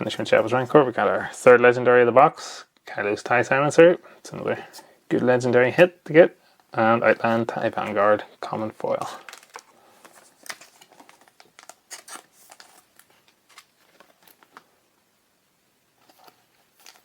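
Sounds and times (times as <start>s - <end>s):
rustling of cards and foil wrappers: 8.9s - 14.7s, 16.0s - 17.0s.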